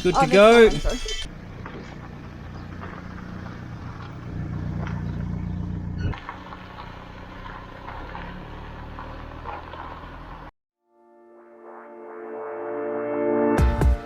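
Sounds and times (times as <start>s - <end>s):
van engine and road rumble: 0.0s - 10.5s.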